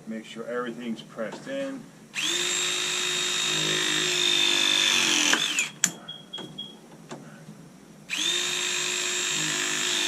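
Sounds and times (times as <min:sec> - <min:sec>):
press tool motor whining: 0:02.2 - 0:05.9, 0:08.1 - 0:10.0.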